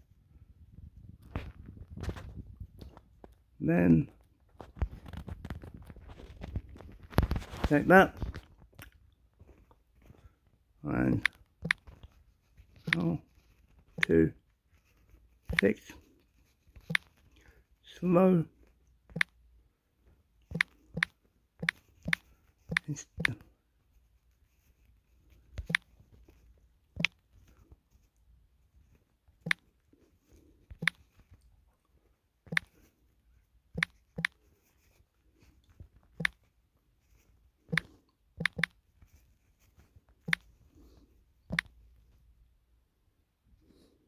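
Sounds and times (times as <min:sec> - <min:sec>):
sharp taps or clicks: 0:11.1 - 0:11.9, 0:12.9 - 0:13.1, 0:15.5 - 0:15.8, 0:20.5 - 0:23.4, 0:37.7 - 0:38.7.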